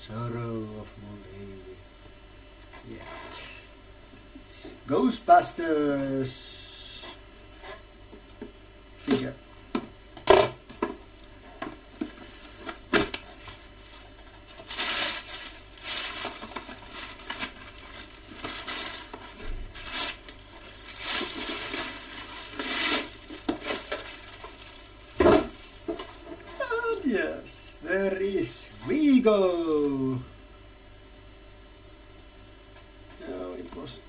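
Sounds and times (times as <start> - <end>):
packaging tearing and crinkling: 13.0 - 25.5.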